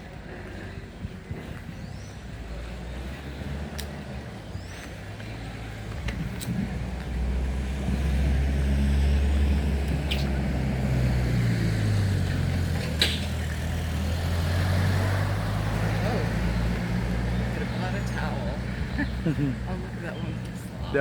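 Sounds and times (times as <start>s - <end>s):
vehicle engine humming: 0.0s - 21.0s.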